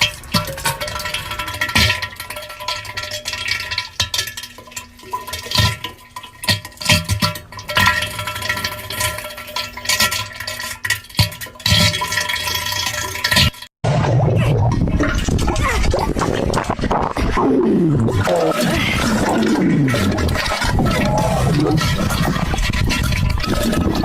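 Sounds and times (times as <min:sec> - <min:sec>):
cartoon wet splattering: 0:13.9 - 0:24.0.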